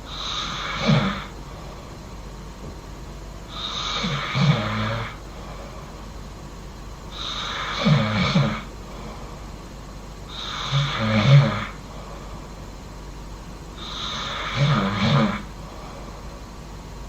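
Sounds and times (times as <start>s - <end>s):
person snoring loudly: 0.1s - 1.4s, 3.5s - 5.2s, 7.1s - 9.2s, 10.3s - 12.1s, 13.8s - 15.5s.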